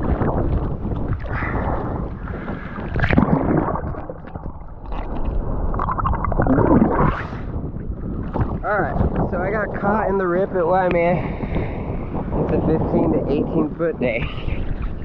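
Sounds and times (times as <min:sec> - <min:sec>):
water sloshing and splashing: 0:00.0 - 0:09.7, 0:14.0 - 0:15.0
wind buffeting microphone: 0:00.0 - 0:15.0.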